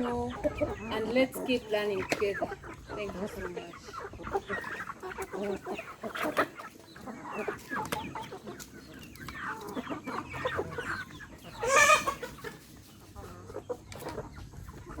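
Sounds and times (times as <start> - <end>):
chickens clucking: 0.0 - 15.0
loud high chicken call: 11.6 - 12.3.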